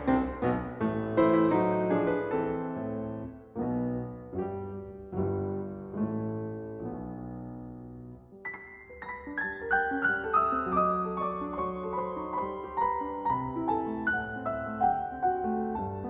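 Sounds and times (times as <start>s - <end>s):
piano melody: 0.0s - 16.0s.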